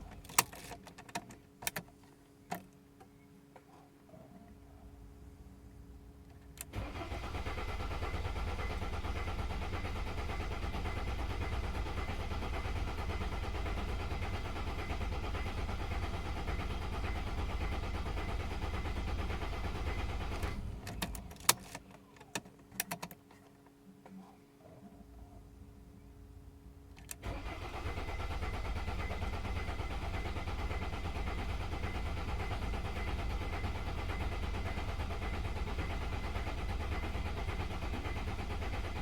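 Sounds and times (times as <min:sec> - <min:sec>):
starter cranking engine: 0:06.7 - 0:21.2, 0:27.1 - 0:39.0.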